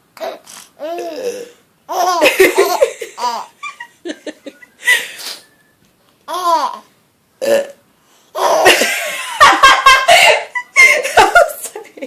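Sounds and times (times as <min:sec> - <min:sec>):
baby laughing: 0:01.9 - 0:03.9, 0:06.3 - 0:06.8, 0:08.4 - 0:08.9
burp: 0:07.4 - 0:07.8.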